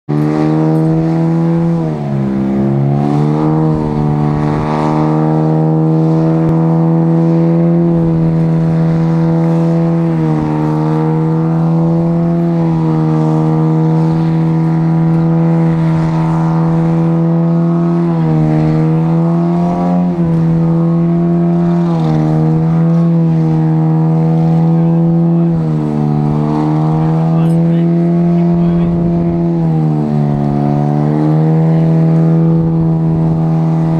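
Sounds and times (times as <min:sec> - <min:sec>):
car engine revving high: 0:00.1 - 0:33.9.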